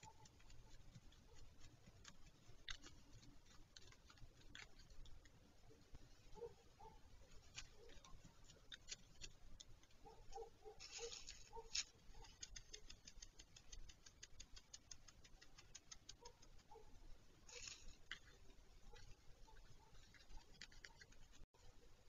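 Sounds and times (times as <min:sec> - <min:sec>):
scratching rustles: 0:00.0 - 0:21.7
soft pips: 0:00.0 - 0:22.0
rapid even clicking: 0:11.3 - 0:21.5.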